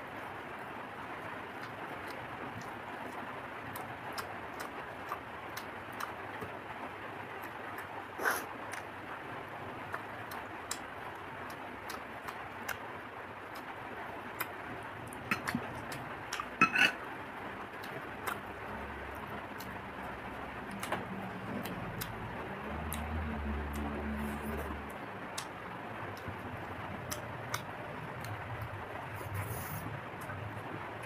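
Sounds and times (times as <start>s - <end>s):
person chewing food: 1.5s - 6.5s, 14.3s - 17.0s, 17.7s - 18.5s, 19.1s - 30.3s.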